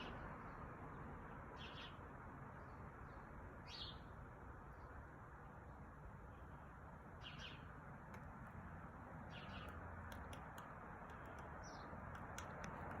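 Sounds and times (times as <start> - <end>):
woodpecker pecking: 7.9 - 13.0
bird chirps: 9.3 - 10.4.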